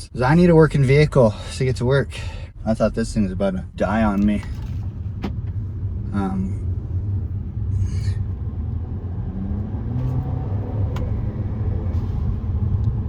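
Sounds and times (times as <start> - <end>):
car engine rumbling under load: 0.0 - 13.0.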